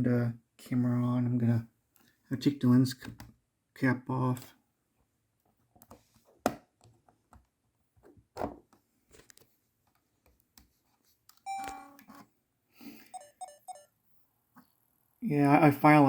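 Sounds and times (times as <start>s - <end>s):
short electronic beep: 11.5s - 12.0s, 13.1s - 13.9s.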